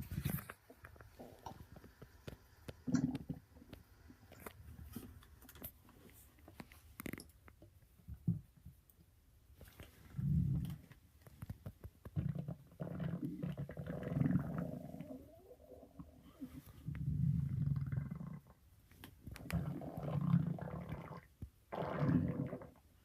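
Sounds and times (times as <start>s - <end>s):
stomach growling: 0.0s - 4.6s, 10.0s - 18.6s, 19.3s - 22.9s
faint clicks and rustles: 0.0s - 12.2s.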